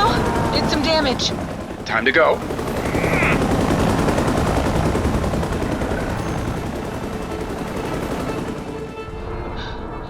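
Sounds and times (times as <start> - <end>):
spacecraft engine crackling rumble: 0.0 - 7.9.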